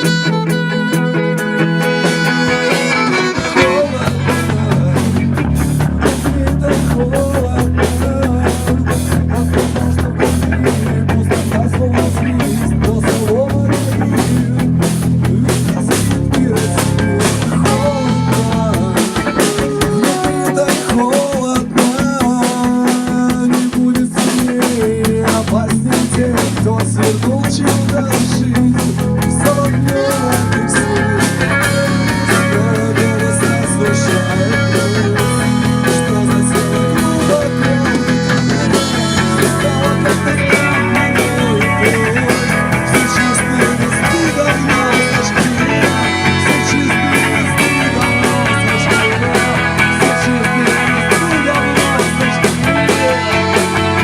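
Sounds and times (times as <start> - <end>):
pitch-bending melody line: 0.0 - 6.6, 16.3 - 22.0, 29.1 - 54.0
drum kit beat: 0.0 - 54.0
electric guitar: 0.0 - 54.0
low bass notes: 0.0 - 54.0
rock band playing: 0.0 - 54.0.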